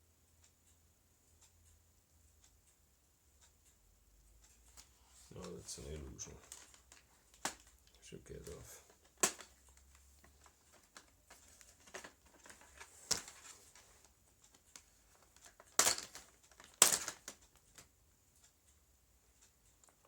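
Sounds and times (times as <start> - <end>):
light ticks: 0.3 - 20.0
plastic clips snapping loose: 6.4 - 13.5, 15.4 - 17.9.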